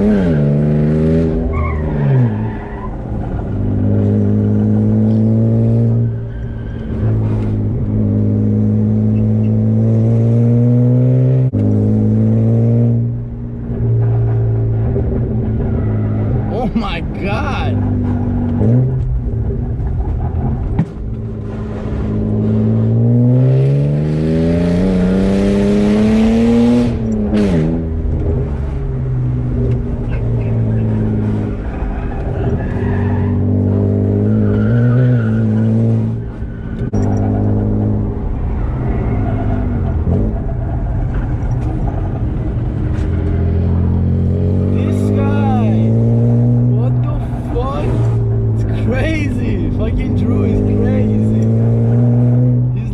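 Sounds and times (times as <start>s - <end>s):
car engine revving under load: 17.7s - 52.9s.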